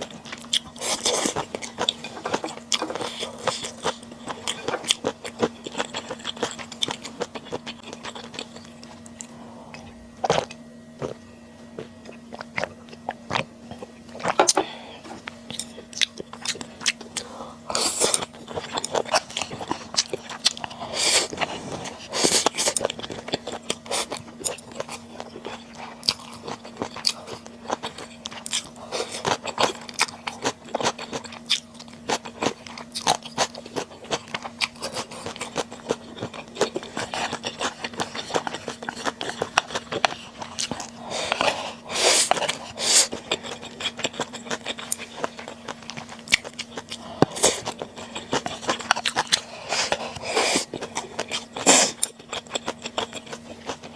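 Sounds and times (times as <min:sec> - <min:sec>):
close chewing and smacking: 0:00.0 - 0:14.6, 0:15.2 - 0:53.9.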